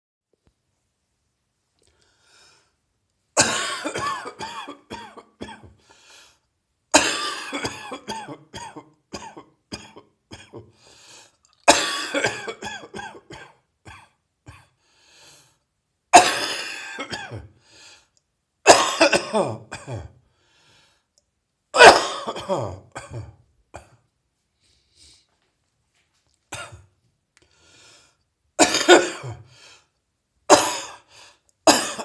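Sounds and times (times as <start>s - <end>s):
person coughing: 3.4s - 5.8s, 6.9s - 10.8s, 11.6s - 14.8s, 16.2s - 17.6s, 18.7s - 20.2s, 21.8s - 24.1s, 26.5s - 26.9s, 28.6s - 29.5s, 30.5s - 31.1s, 31.7s - 32.0s.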